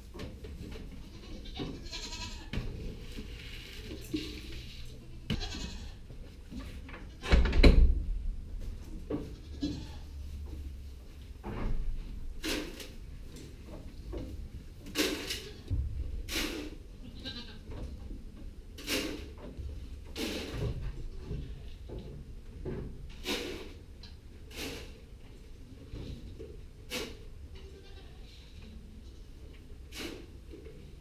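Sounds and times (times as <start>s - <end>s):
goats bleating: 1.0s - 2.5s, 4.2s - 6.1s, 9.2s - 10.2s, 17.0s - 17.7s, 27.6s - 28.4s
knocks and bumps: 6.5s - 18.6s.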